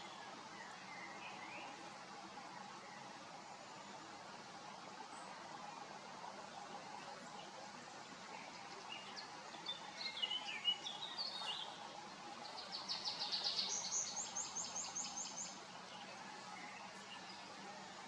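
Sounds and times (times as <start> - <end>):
songbird singing: 0.0 - 3.1, 8.2 - 18.0
background hiss: 0.0 - 18.0.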